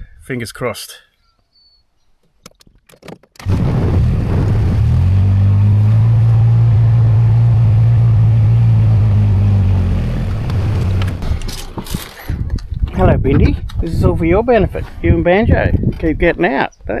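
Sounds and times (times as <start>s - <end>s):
engine running with low hum: 3.4s - 12.8s.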